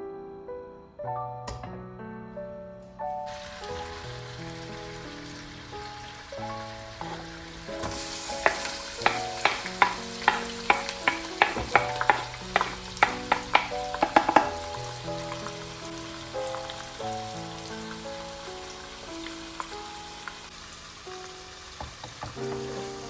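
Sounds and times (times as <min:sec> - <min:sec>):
background music: 0:00.0 - 0:23.0
food sizzling in a pan: 0:03.3 - 0:23.0
utensil knocking against pan: 0:08.4 - 0:14.7.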